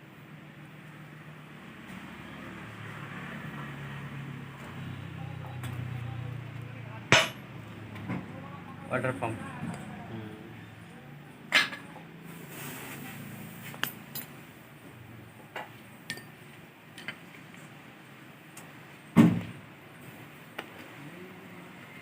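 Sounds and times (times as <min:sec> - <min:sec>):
heavy metal knock: 0:07.1 - 0:07.4
metal tools clinking: 0:13.7 - 0:14.4.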